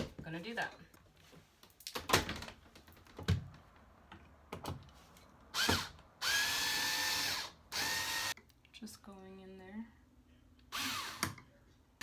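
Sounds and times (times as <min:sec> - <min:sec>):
power drill driving screw: 0:05.6 - 0:08.4, 0:10.8 - 0:11.4.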